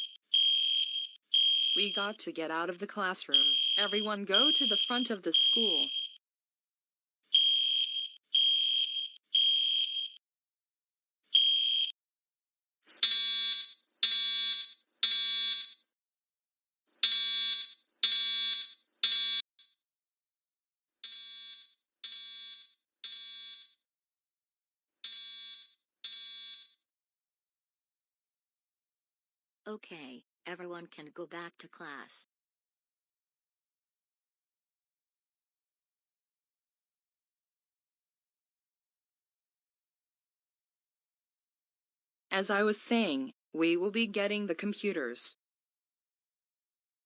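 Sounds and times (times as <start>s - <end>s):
buzzy alarm horn pulsing: 0.0s - 2.2s, 3.3s - 6.2s
high fire alarm beep: 0.0s - 2.2s, 3.3s - 6.2s, 7.3s - 10.2s, 11.3s - 12.0s, 13.0s - 15.8s, 17.0s - 19.5s, 21.1s - 23.8s, 25.0s - 26.8s.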